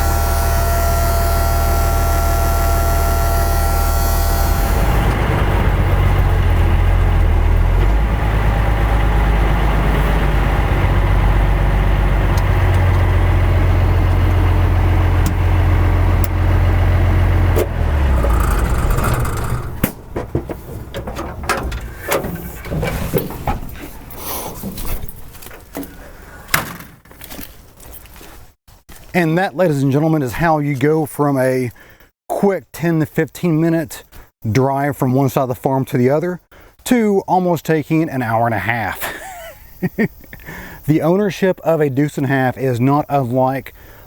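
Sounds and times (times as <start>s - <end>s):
diesel engine rumbling: 0.0s - 26.5s
clicks and knocks: 17.6s - 27.1s.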